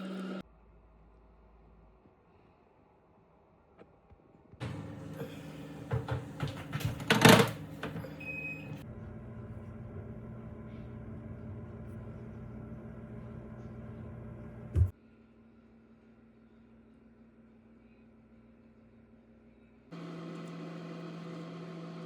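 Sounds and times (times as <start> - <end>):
clattering and knocks: 5.8 - 8.1
appliance motor humming: 20.0 - 22.0.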